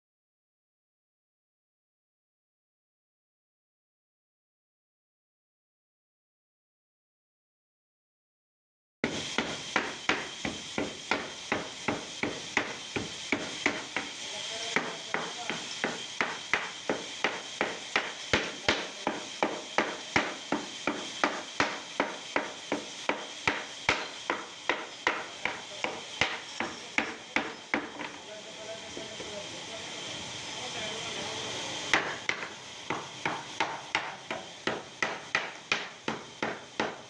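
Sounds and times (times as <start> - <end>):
hammer striking wood: 9.0 - 14.1, 14.8 - 28.2, 31.9 - 37.0.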